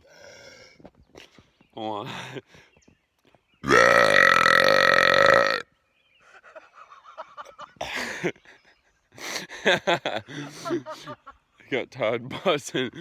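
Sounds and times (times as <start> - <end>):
man burping: 3.6 - 5.6.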